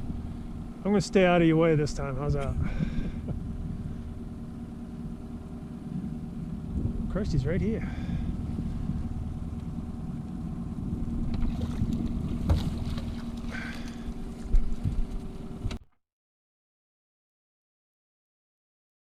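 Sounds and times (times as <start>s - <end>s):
boat motor running: 0.0s - 15.8s
knocks and thumps in boat: 11.1s - 15.8s.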